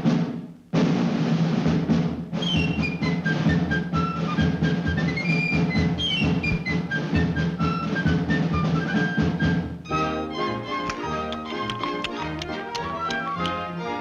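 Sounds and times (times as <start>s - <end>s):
orchestral music: 9.9s - 14.0s.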